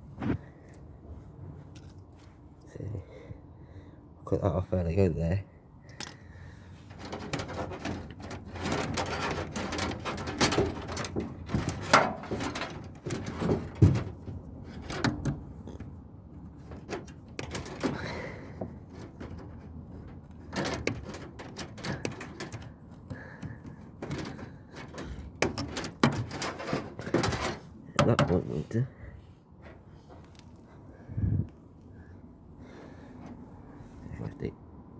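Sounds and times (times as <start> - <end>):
clattering of metal and plastic parts: 1.6 - 2.3, 5.9 - 30.8, 32.6 - 34.4.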